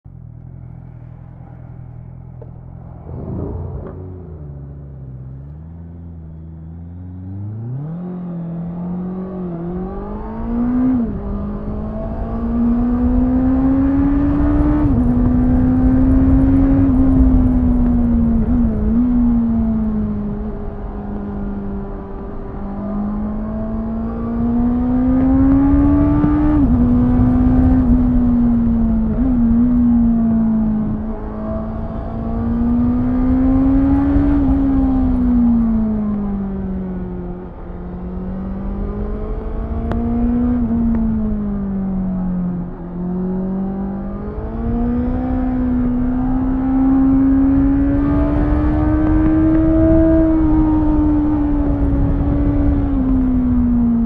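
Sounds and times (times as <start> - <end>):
motorcycle engine revving: 0.1 - 54.0
wind on microphone: 9.7 - 42.9, 44.2 - 54.0.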